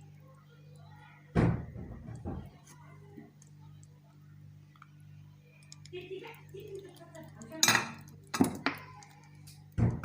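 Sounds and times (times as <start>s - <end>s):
kitchenware clinking: 7.5s - 9.1s.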